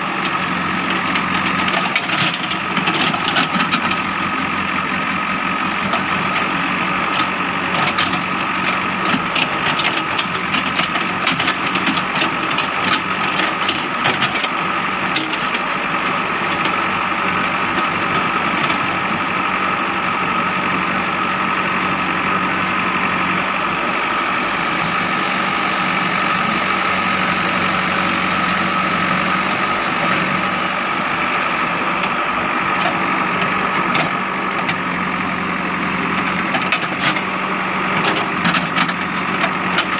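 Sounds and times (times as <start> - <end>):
diesel engine running with whine: 0.0 - 39.9.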